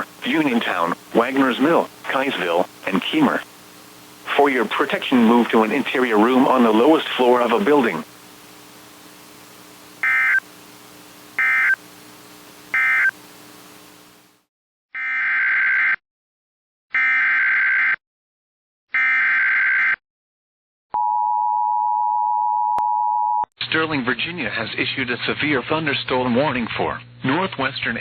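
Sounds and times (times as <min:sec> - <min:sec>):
buzzy data bursts: 0:00.0 - 0:14.3
hum and hiss: 0:00.0 - 0:14.5.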